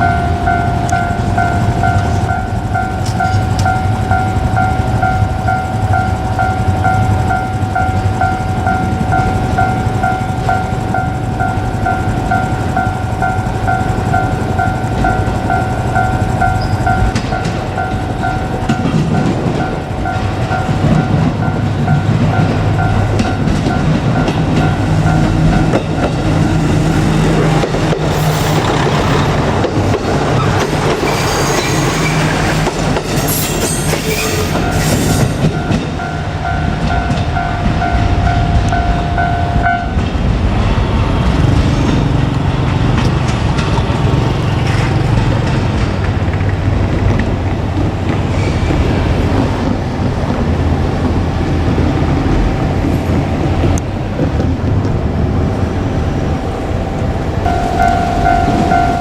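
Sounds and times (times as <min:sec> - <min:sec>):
steady high tone: 0:00.0 - 0:41.2, 0:57.4 - 0:59.0
train wheels clattering on rails: 0:00.0 - 0:56.3
diesel engine humming: 0:00.0 - 0:59.0.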